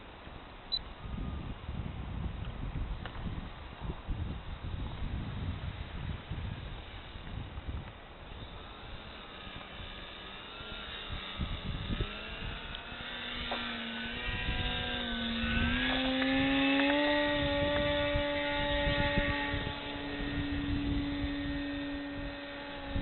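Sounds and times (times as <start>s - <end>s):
rc airplane motor whining: 0.8s - 23.0s
gusty low rumble: 11.1s - 23.0s.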